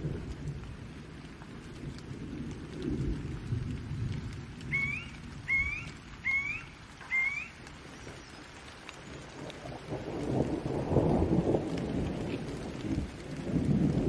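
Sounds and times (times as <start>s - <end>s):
low rumble of thunder: 0.0s - 14.0s
steady rain: 0.0s - 14.0s
bird whistling upslurred calls: 4.7s - 7.6s.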